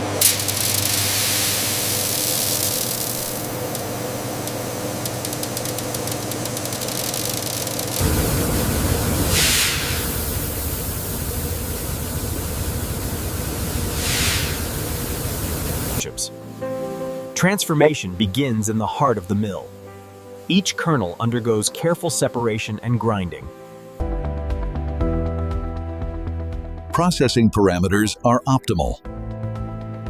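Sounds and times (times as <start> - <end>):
machinery low hum: 0.0 - 16.2
hiss of air: 0.2 - 3.6, 8.0 - 16.0
heavy machinery rumble: 7.7 - 16.0.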